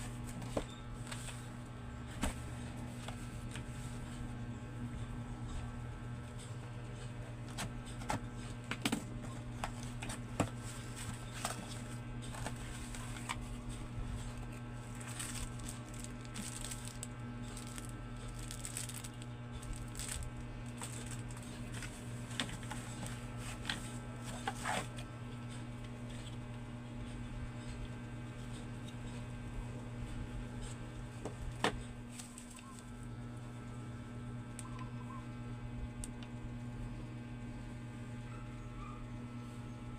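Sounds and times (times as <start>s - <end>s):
steady low hum: 0.0s - 39.9s
packaging rustling and crinkling: 8.8s - 25.0s, 32.0s - 32.9s.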